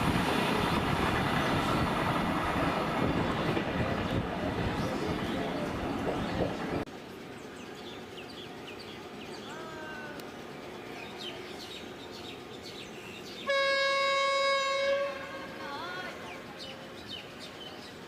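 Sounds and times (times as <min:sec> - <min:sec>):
birds chirping: 0:01.4 - 0:18.0
train horn: 0:13.4 - 0:15.8.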